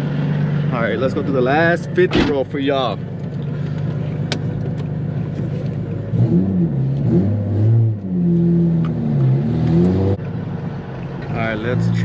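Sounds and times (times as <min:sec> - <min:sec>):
car engine revving: 0:00.0 - 0:12.0.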